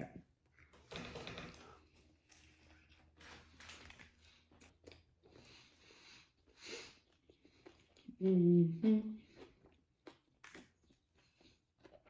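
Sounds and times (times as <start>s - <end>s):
faint chewing: 1.8s - 8.3s, 9.2s - 12.0s.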